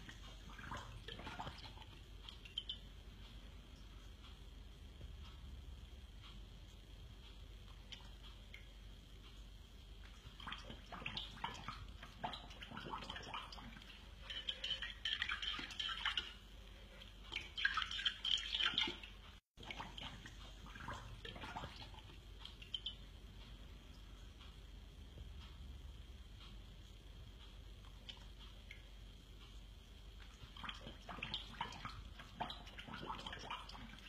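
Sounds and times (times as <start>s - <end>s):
dog licking and lapping at a bowl: 0.0s - 2.8s, 10.0s - 23.0s, 30.2s - 34.0s.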